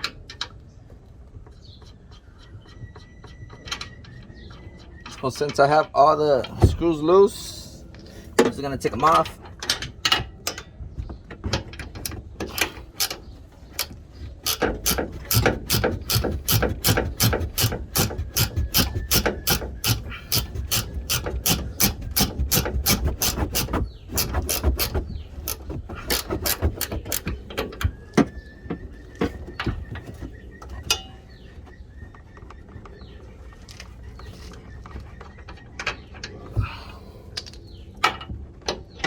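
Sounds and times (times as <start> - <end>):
ratchet wrench clicking: 12.5 - 13.2, 13.8 - 24.9, 25.5 - 27.3.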